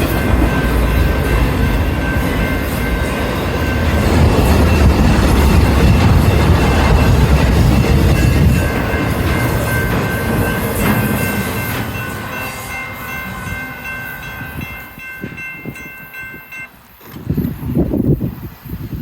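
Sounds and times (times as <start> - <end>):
high-pitched ringing tone: 0.0 - 18.1
freight train rumbling past: 0.0 - 19.0.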